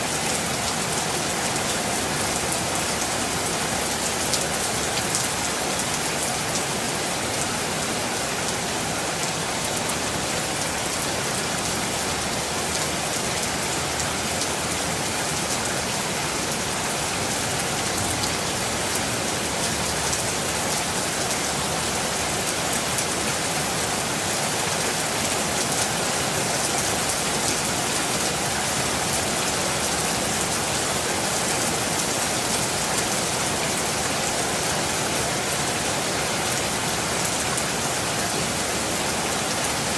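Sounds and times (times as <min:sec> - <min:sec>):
steady rain falling: 0:00.0 - 0:39.9.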